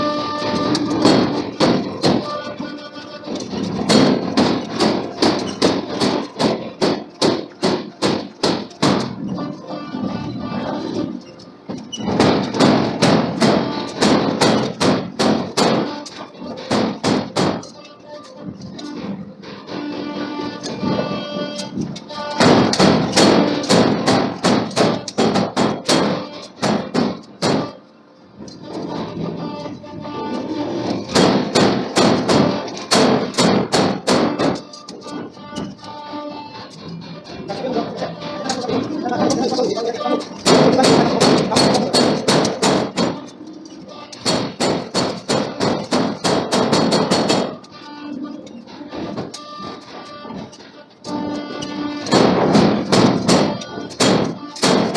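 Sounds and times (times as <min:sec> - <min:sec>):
forging hammer striking steel: 0:00.2 - 0:02.6, 0:03.2 - 0:09.3, 0:11.7 - 0:17.8, 0:21.7 - 0:27.8, 0:30.8 - 0:35.9, 0:38.2 - 0:47.7, 0:51.4 - 0:54.9
hammer blows on steel: 0:12.1 - 0:17.8, 0:44.1 - 0:47.6.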